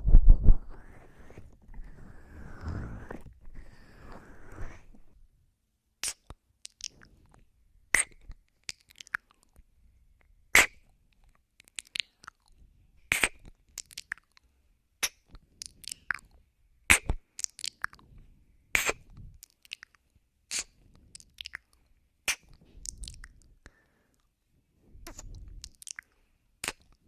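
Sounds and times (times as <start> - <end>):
wet kissing smacks: 6.0 - 7.0, 7.9 - 9.2, 13.1 - 14.3, 16.9 - 18.0, 18.8 - 19.9, 20.5 - 21.7, 22.3 - 23.3, 25.1 - 27.0
soft mouth clicks: 6.0 - 9.6, 10.6 - 18.0, 18.8 - 24.3, 25.0 - 27.0.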